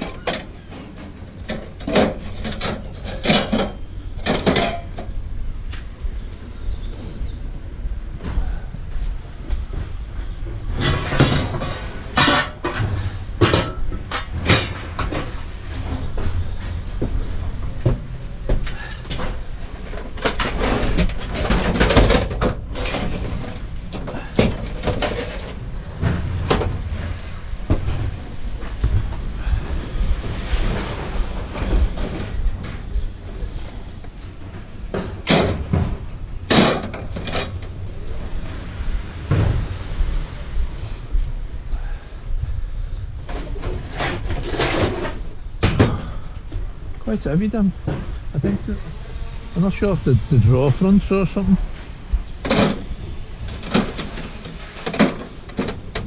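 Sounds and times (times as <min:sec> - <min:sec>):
scrap metal clanking: 0:00.0 - 0:05.1, 0:10.7 - 0:16.8, 0:18.6 - 0:28.8, 0:43.3 - 0:46.3, 0:51.8 - 0:56.0
low rumble: 0:04.9 - 0:21.8, 0:22.4 - 0:56.0.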